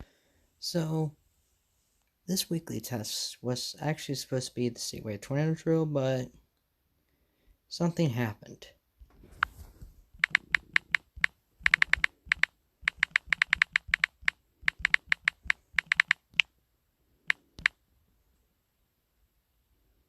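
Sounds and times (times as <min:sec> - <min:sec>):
keyboard key clicks: 0:10.2 - 0:16.5, 0:17.3 - 0:17.8.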